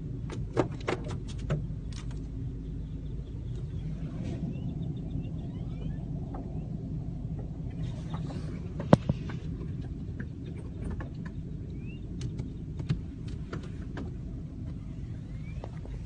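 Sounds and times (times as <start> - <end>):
car rumble: 0.0 - 16.0
birds clicking and chirping: 0.7 - 16.0.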